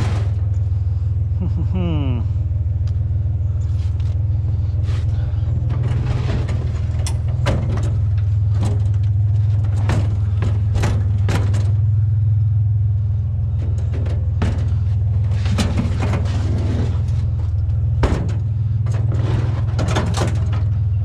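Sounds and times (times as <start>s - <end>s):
scrap metal clanks and knocks: 0.0s - 0.7s, 4.8s - 12.0s, 13.4s - 21.0s
steady low rumble: 0.0s - 21.0s.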